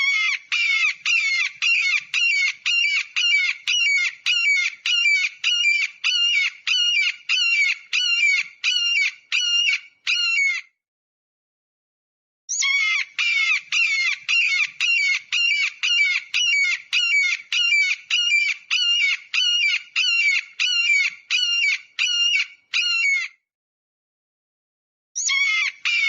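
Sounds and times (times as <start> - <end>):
eagle calling: 0.0 - 10.6, 12.5 - 23.3, 25.2 - 26.0.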